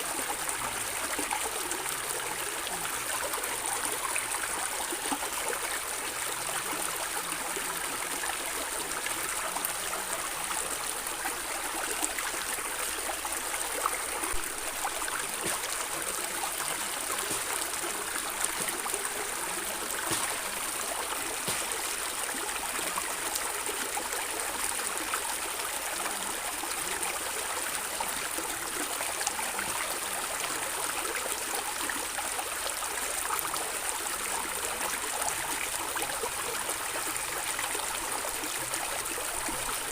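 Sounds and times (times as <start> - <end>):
stream gurgling over stones: 0.0 - 39.9
small water splashes: 13.9 - 23.0.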